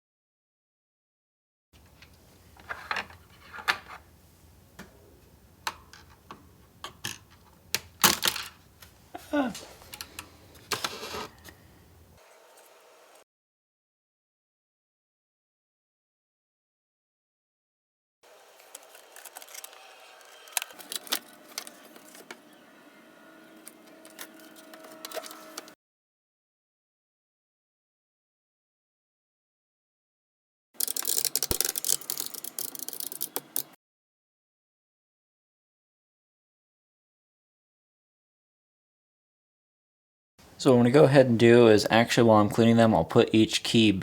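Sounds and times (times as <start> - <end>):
short scrapes: 10.7 - 11.5
keyboard plastic clicks and rattles: 30.8 - 33.7.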